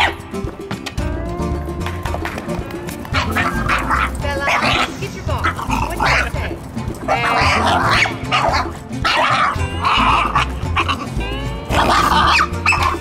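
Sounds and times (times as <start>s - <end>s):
background music with bass line: 0.0s - 13.0s
puppy whining: 3.1s - 4.9s, 7.0s - 13.0s
puppy making rough vocal noises: 3.1s - 6.4s, 7.1s - 13.0s.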